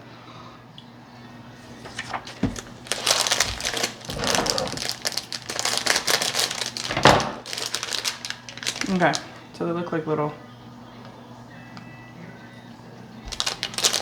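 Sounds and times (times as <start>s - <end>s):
plastic candy bag crinkling: 1.6s - 9.6s, 13.3s - 14.0s.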